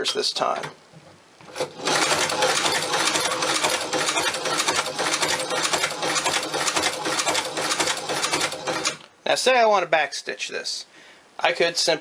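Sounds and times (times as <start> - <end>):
sewing machine needle clatter: 1.5 - 9.0.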